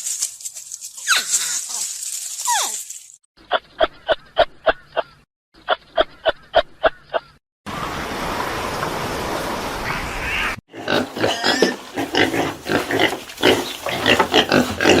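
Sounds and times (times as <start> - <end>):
animal squealing and grunting: 10.2 - 15.0.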